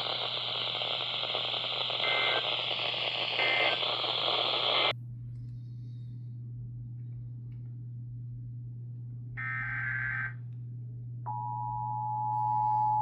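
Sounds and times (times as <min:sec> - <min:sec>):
radio receiver hiss: 0:00.0 - 0:04.9, 0:09.4 - 0:10.4
two-tone data burst chirps: 0:00.0 - 0:04.9
low steady hum: 0:00.0 - 0:13.0.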